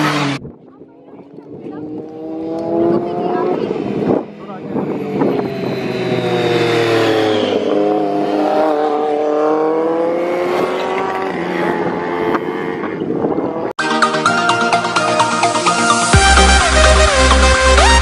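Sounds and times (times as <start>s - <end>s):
motorcycle engine at high revs: 0.0s - 13.7s.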